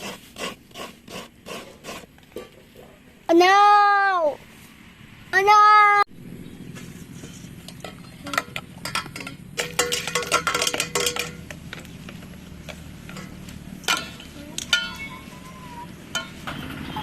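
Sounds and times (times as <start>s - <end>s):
metal pots and utensils clinking: 7.1s - 17.0s.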